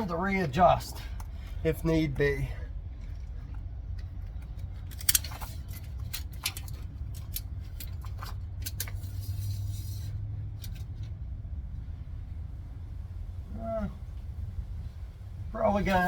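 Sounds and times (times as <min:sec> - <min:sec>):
steady low rumble: 0:00.0 - 0:16.0
metal tools clicking and rattling: 0:04.0 - 0:09.8.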